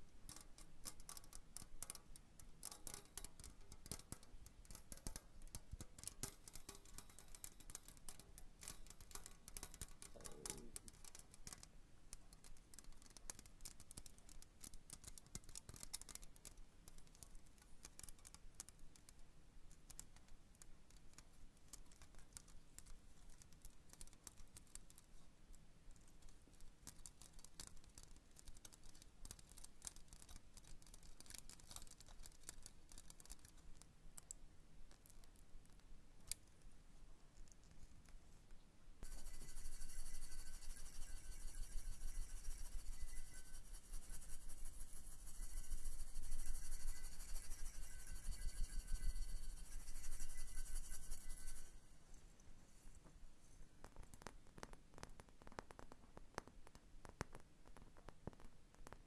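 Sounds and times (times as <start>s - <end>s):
fingernails tapping and scratching: 39.0s - 51.7s.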